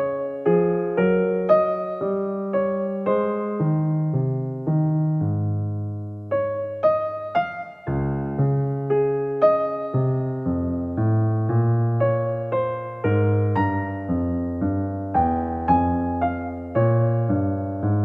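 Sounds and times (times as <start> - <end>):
piano music: 0.0 - 18.0.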